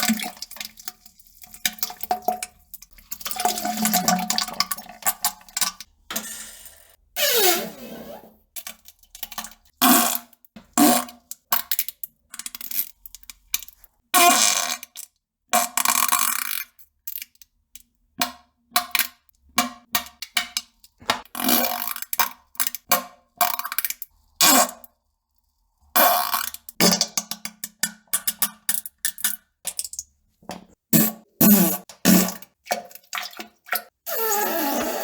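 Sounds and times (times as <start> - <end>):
fart sounds: 30.9 - 32.5, 34.1 - 35.0.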